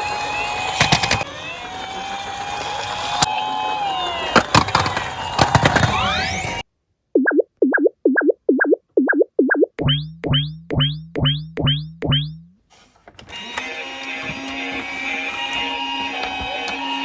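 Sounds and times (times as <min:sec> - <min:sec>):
emergency sirens wailing: 0:00.0 - 0:06.6, 0:13.3 - 0:17.0
toy cars clacking down a slope: 0:00.3 - 0:06.4.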